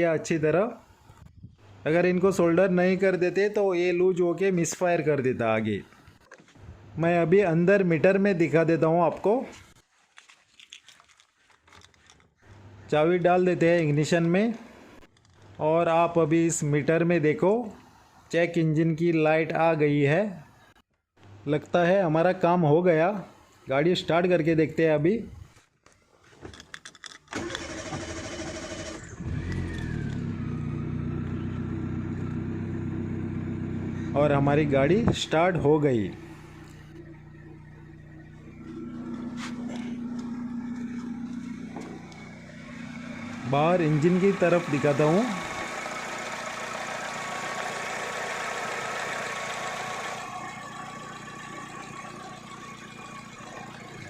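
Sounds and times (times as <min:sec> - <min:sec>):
starter motor cranking: 0:27.3 - 0:30.9, 0:36.2 - 0:54.0
car engine idling: 0:27.6 - 0:54.0.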